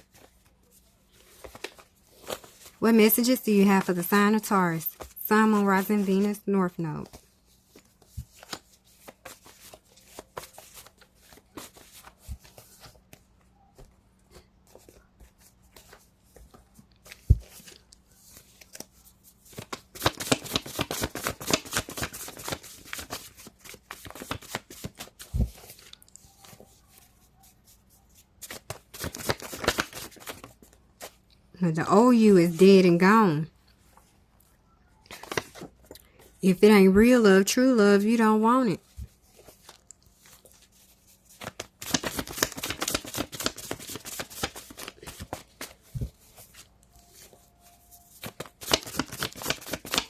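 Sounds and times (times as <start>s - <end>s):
cards being shuffled: 7.0s - 13.9s, 14.7s - 26.9s, 28.4s - 31.2s, 38.8s - 47.4s, 48.1s - 50.0s.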